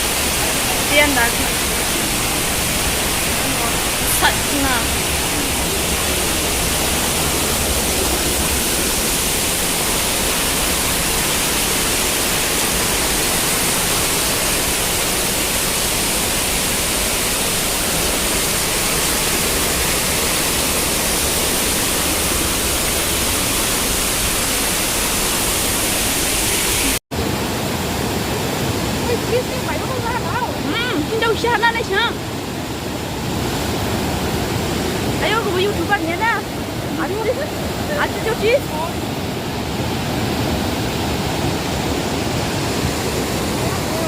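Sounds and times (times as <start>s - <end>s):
floodwater rushing: 0.0s - 44.0s.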